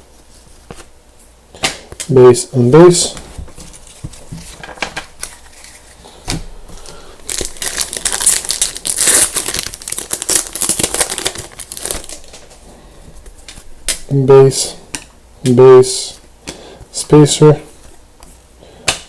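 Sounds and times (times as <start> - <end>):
wrapper tearing and crinkling: 3.8 - 5.9, 6.8 - 12.6.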